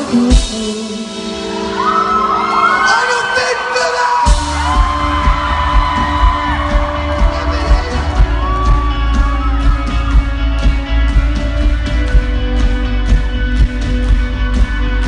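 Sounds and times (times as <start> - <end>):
heavy bass and drums: 0.0 - 1.3, 4.3 - 15.0
rock band playing live: 0.0 - 15.0.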